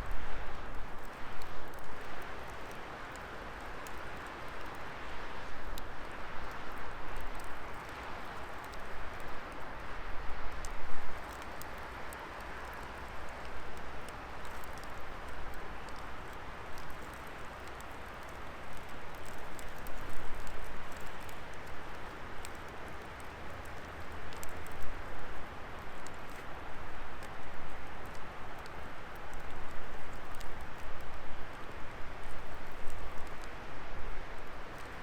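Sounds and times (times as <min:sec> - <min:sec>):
fire crackling and popping: 0:10.6 - 0:33.6.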